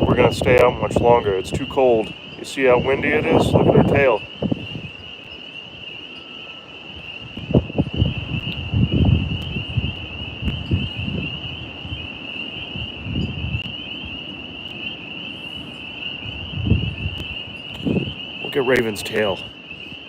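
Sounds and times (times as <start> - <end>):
tree frogs chorus: 0.0 - 20.0
wind gusting on microphone: 0.0 - 20.0.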